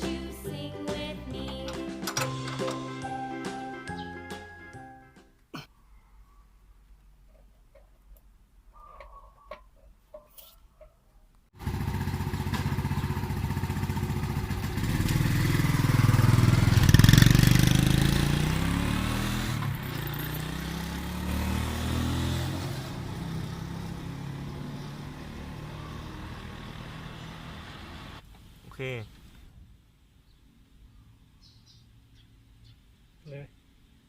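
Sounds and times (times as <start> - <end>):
motorcycle engine accelerating: 11.6 - 28.2.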